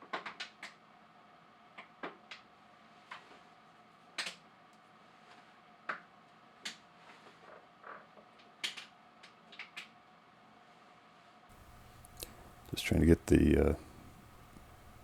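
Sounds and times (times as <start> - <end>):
faint steady hum: 11.5 - 15.0.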